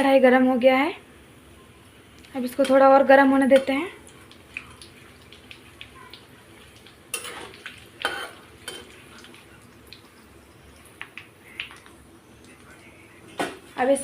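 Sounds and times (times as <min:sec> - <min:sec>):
spices sizzling in oil: 0:01.9 - 0:12.9.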